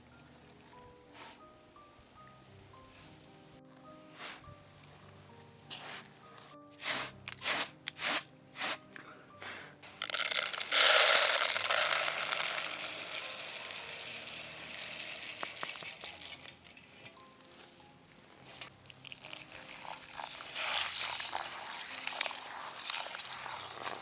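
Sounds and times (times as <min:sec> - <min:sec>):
metallic clinks and knocks: 0:11.7 - 0:17.2
food sizzling in hot pan: 0:19.6 - 0:24.0.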